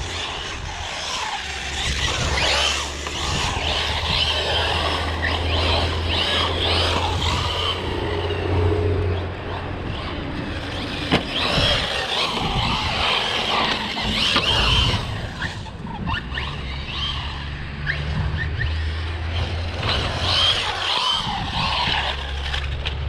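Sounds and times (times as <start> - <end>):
electric rc car motor whine: 0.0 - 23.0.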